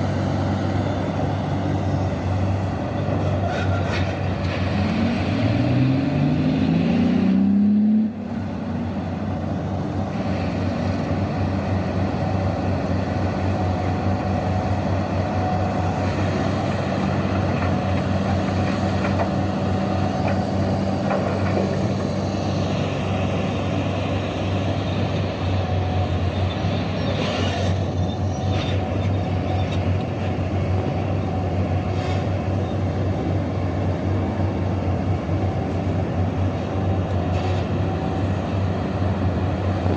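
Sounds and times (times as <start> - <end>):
diesel engine revving: 0.0 - 39.9.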